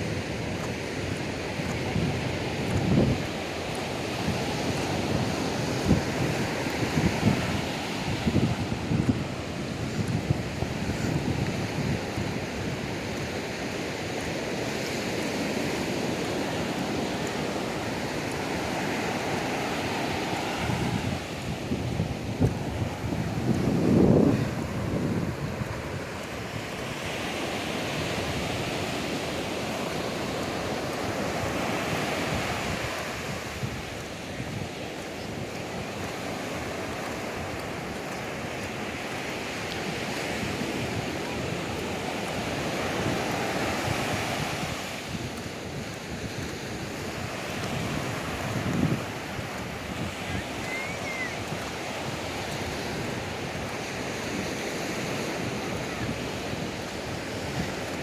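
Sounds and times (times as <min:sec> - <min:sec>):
ocean surf washing onto beach: 0:00.0 - 0:58.0
wind buffeting microphone: 0:00.0 - 0:58.0.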